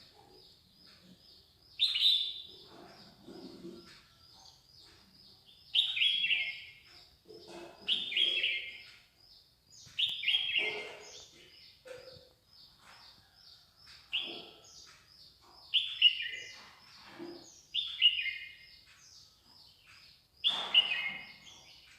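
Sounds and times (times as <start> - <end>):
faint rapid bird chirps: 0.0 - 21.9
harsh high bird calls: 7.5 - 9.0, 9.8 - 12.3.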